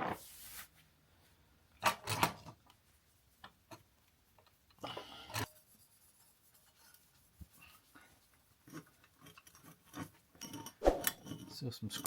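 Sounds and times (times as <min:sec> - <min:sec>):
rubbing of polishing cloth on metal: 0:05.5 - 0:09.0.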